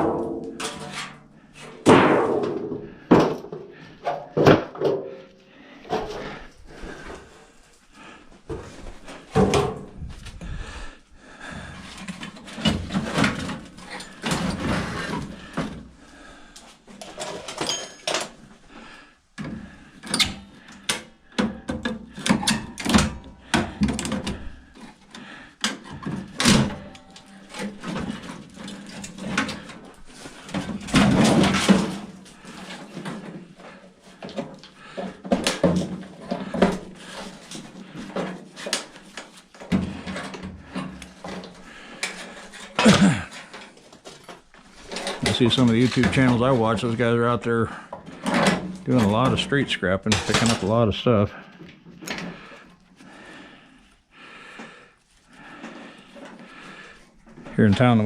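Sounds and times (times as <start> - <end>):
sheet metal parts clanking: 0.0 - 5.2, 17.0 - 18.4, 25.6 - 51.2.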